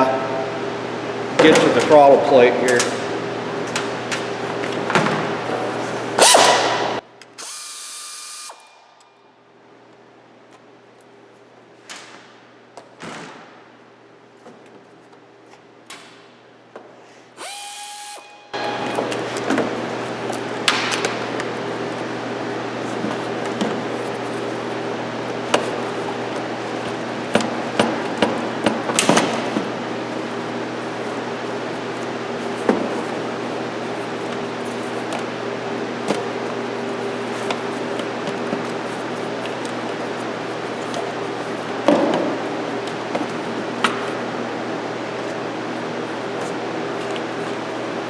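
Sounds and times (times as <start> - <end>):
steady background hum: 0.0 - 48.0
power drill whining: 6.2 - 8.8, 17.4 - 19.5.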